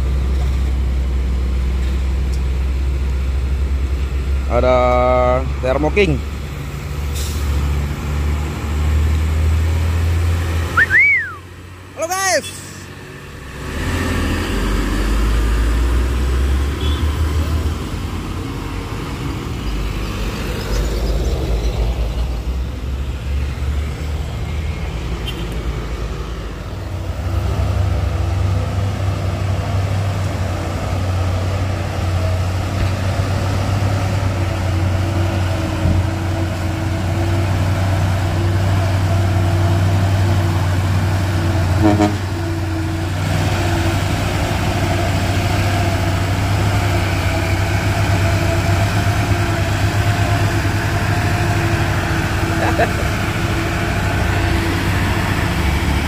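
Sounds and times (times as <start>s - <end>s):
heavy truck diesel engines: 0.0s - 56.0s
traffic noise: 0.0s - 56.0s.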